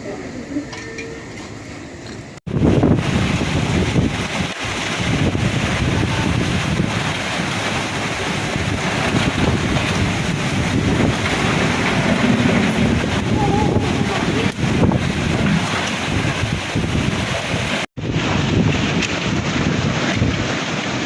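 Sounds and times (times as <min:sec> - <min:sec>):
rain: 0:01.4 - 0:21.0
strong storm wind: 0:02.4 - 0:21.0
wind buffeting microphone: 0:02.4 - 0:21.0.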